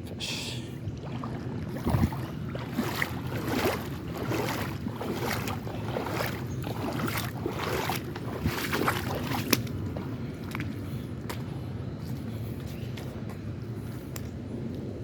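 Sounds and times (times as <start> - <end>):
creek water splashing: 0.5 - 11.5.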